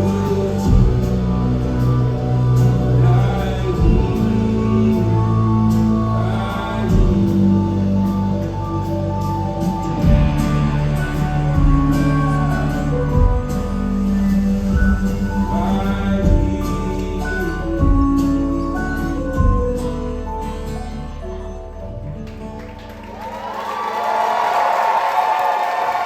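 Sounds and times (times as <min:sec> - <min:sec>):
person singing without words: 0:00.0 - 0:19.8
live band playing slow chords: 0:00.0 - 0:23.6.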